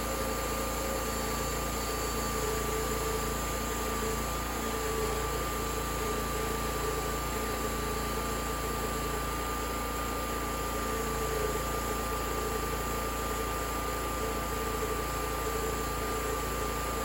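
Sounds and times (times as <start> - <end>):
band sawmill cutting log: 0.0 - 17.0.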